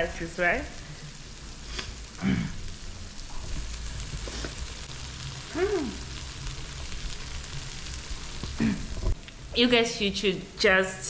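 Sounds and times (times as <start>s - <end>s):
food sizzling in a pan: 0.0s - 11.0s
person making a voiced sound: 5.5s - 6.0s.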